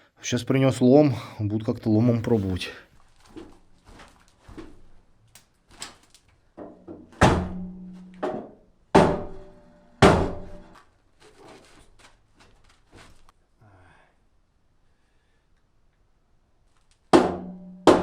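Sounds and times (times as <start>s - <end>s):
crowbar knocking on metal: 6.6s - 9.4s, 17.2s - 18.0s
loud ringing metal clanks: 7.3s - 8.4s.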